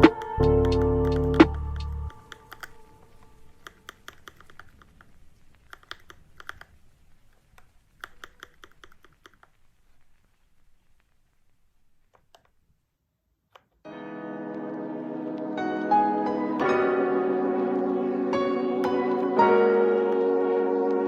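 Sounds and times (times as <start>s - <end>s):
mechanical keyboard typing: 0.0s - 2.8s, 3.6s - 6.8s, 8.0s - 9.6s.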